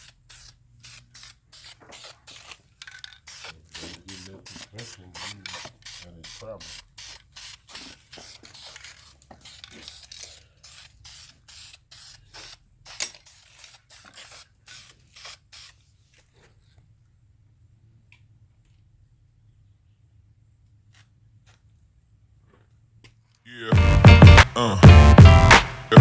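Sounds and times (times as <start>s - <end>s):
short spraying bursts: 0.0s - 15.9s.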